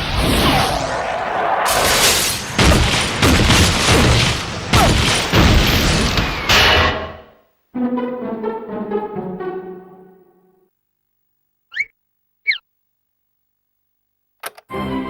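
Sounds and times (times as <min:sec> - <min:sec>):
cartoon booming bangs: 0:00.0 - 0:07.3.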